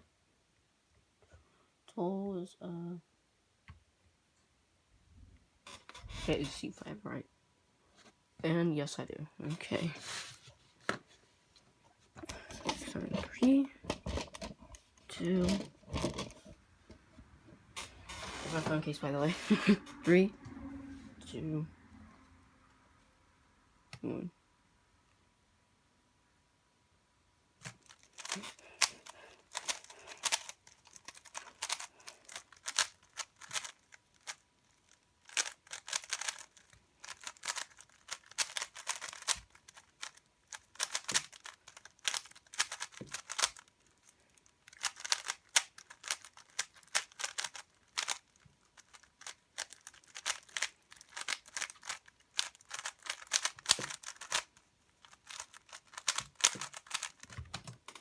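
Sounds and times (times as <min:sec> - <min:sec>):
puzzle cube clicking: 0:12.2 - 0:16.4, 0:27.6 - 0:34.4, 0:35.2 - 0:58.0.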